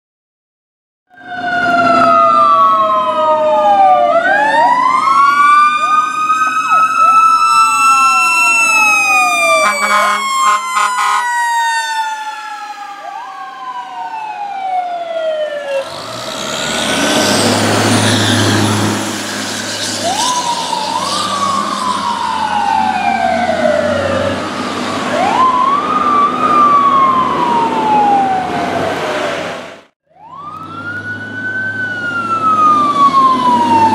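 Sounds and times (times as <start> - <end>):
fire engine sirens wailing: 1.1 - 33.9
diesel engines rumbling: 3.2 - 33.9
rough rush of passing vehicles: 4.6 - 33.9
air horn blasts: 9.4 - 11.5.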